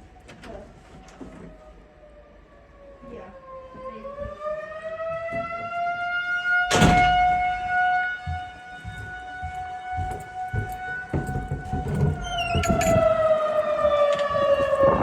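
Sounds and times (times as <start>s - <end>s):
tornado warning siren: 0.0s - 15.0s.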